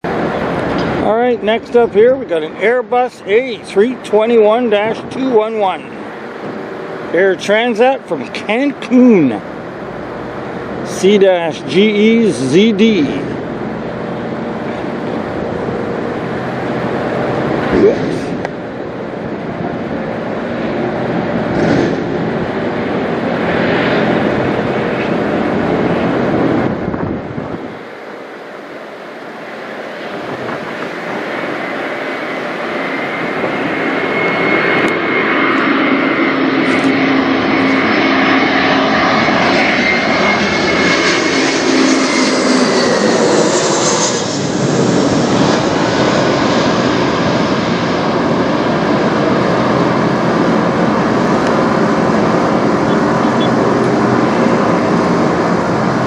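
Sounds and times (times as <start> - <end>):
high jet engine whine: 0.0 - 56.0
jet airliner passing overhead: 0.0 - 56.0.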